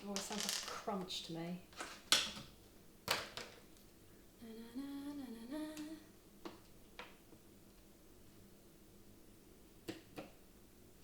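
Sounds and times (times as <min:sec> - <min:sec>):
woman humming: 0:04.4 - 0:06.1.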